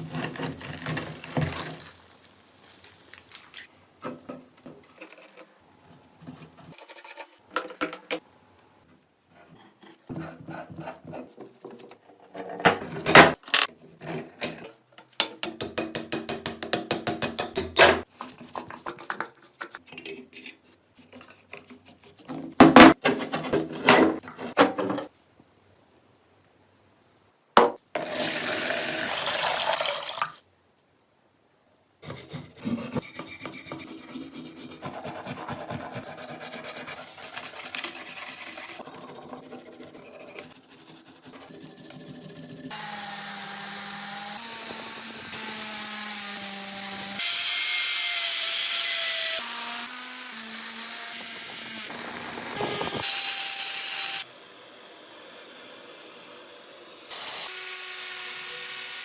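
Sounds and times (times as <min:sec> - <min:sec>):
electric tool whining: 0:42.7 - 0:54.3.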